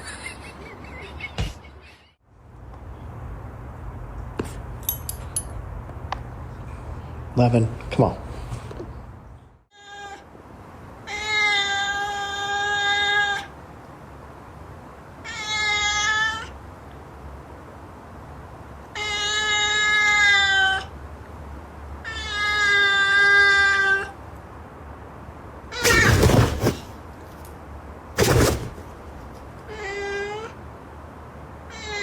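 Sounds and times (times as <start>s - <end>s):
cat yowling: 11.1s - 13.5s, 15.2s - 16.5s, 19.0s - 20.9s, 22.0s - 24.2s, 25.7s - 26.9s, 28.2s - 28.8s, 29.7s - 30.6s, 31.7s - 32.0s.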